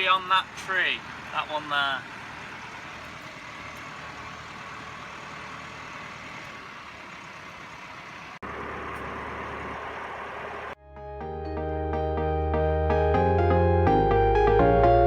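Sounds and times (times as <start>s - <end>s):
farm vehicle engine running: 0.0s - 10.8s.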